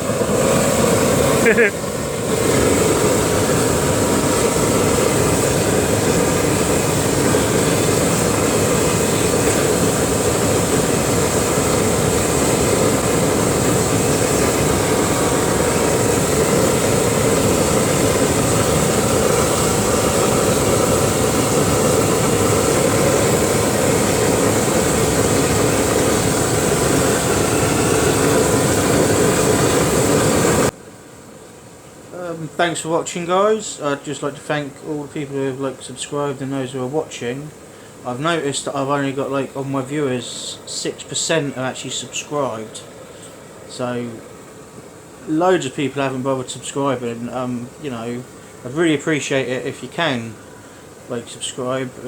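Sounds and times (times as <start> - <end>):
burner roaring: 0.0 - 30.8
faint steady whine: 0.0 - 52.0.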